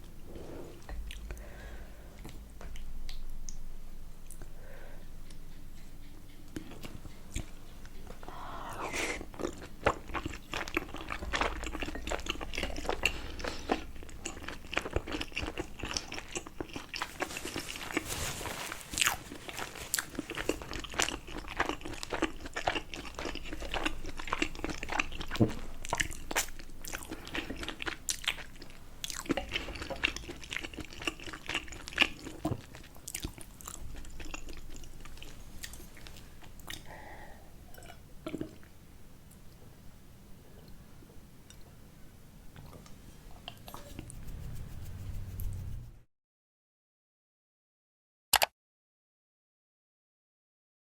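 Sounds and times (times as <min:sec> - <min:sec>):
chewing and biting dumplings: 0:09.2 - 0:18.2, 0:18.8 - 0:36.8.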